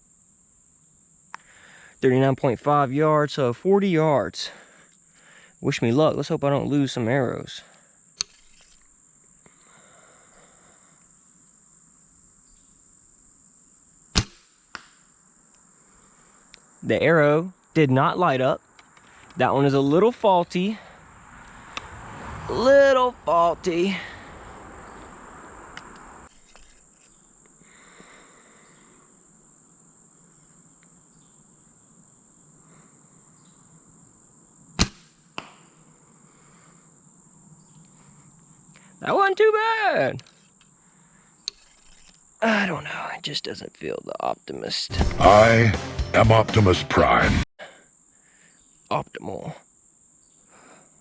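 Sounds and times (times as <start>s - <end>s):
insects trilling: 0.0s - 45.5s, 47.6s - 51.0s
bow release snap: 8.2s - 8.9s, 14.1s - 15.0s, 21.7s - 21.9s, 34.8s - 35.7s
bowstring crack: 8.2s - 9.0s, 14.1s - 15.1s, 21.4s - 22.0s, 25.7s - 27.2s, 34.8s - 35.8s, 41.4s - 42.2s
arrow striking target: 14.1s - 15.0s, 34.8s - 35.7s.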